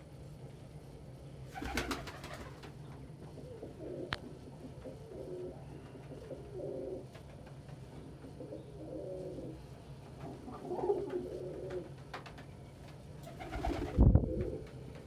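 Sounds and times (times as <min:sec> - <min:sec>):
pigeon cooing: 0:03.3 - 0:07.1, 0:08.3 - 0:09.6, 0:10.3 - 0:11.9.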